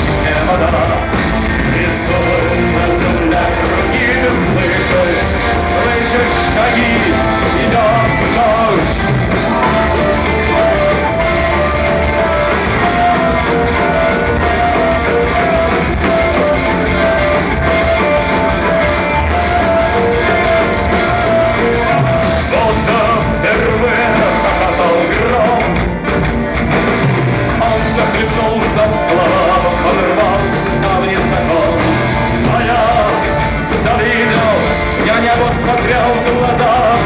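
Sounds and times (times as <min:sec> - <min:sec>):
rock band playing: 0:00.0 - 0:37.0.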